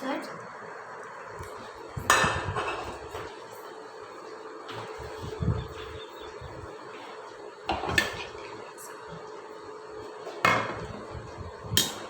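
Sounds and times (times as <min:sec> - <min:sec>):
utensils and dishes clinking: 0:11.7 - 0:12.0.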